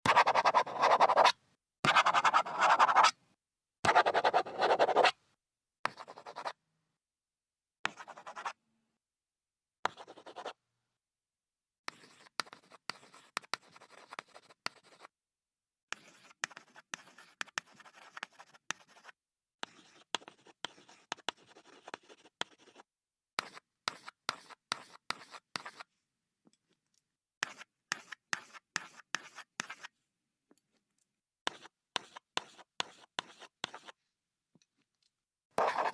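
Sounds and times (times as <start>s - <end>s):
pen writing on paper: 0.0s - 1.3s, 1.9s - 3.2s, 3.9s - 5.1s, 5.9s - 6.5s, 7.9s - 8.5s, 9.9s - 10.5s, 11.9s - 15.1s, 15.9s - 22.8s, 23.4s - 25.8s, 27.4s - 29.9s, 31.5s - 34.0s, 35.6s - 35.9s.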